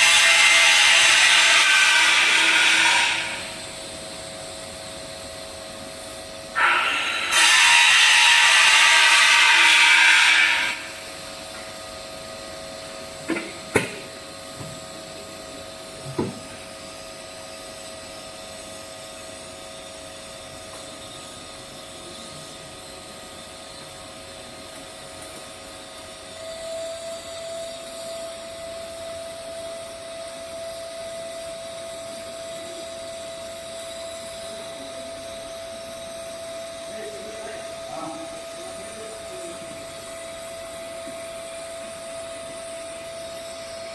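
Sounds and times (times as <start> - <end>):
loud hiss: 0.0 - 3.6, 6.6 - 11.0
machine hum with whine: 0.0 - 43.9.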